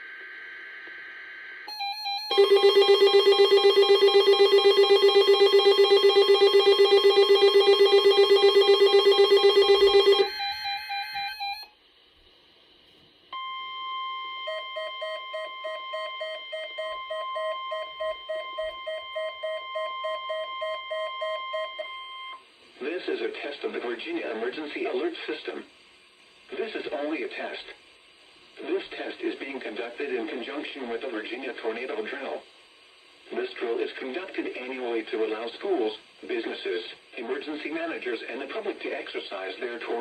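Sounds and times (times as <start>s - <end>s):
steady high alert tone: 1.7s - 11.7s
rapidly pulsing alert tone: 1.8s - 11.6s.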